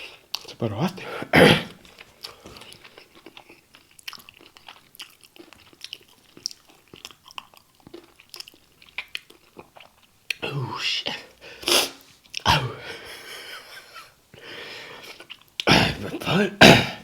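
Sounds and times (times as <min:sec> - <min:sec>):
crunchy food chewing: 0:01.7 - 0:10.4, 0:15.0 - 0:15.7.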